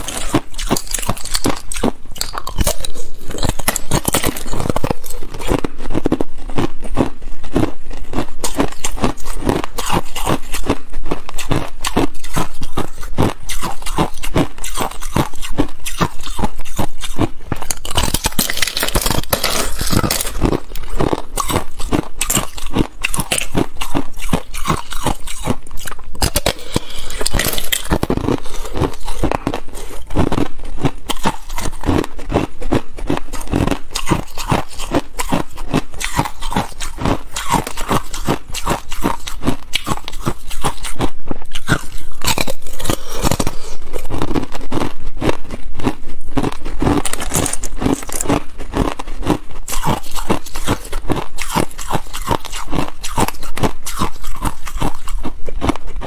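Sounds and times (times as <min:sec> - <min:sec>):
person crunching ice: 0:00.0 - 0:56.0.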